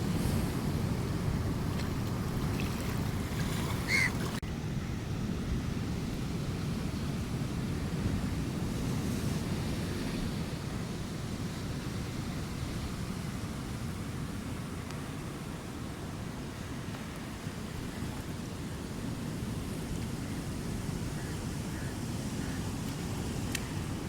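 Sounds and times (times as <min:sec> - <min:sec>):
wind buffeting microphone: 0:00.0 - 0:14.8
sea waves washing on shore: 0:00.0 - 0:24.0.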